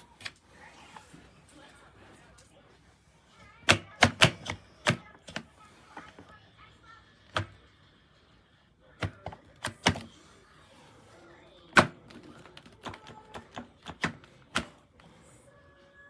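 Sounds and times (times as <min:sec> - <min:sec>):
plastic parts clicking and knocking: 0:03.5 - 0:06.3, 0:07.3 - 0:07.6, 0:09.0 - 0:10.2, 0:11.7 - 0:15.0.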